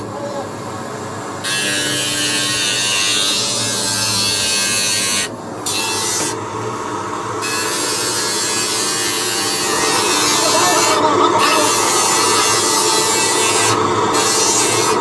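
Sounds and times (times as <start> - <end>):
power tool grinding hiss: 1.4 - 6.4, 7.3 - 15.0
power tool motor hum: 7.4 - 15.0.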